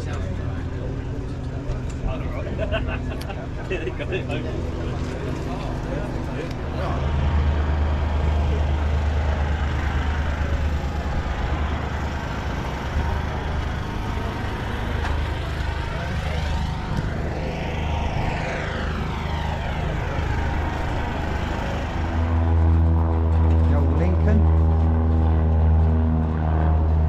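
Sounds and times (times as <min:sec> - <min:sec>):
propeller aircraft flying over: 0:00.0 - 0:27.0
steady low rumble: 0:00.0 - 0:27.0.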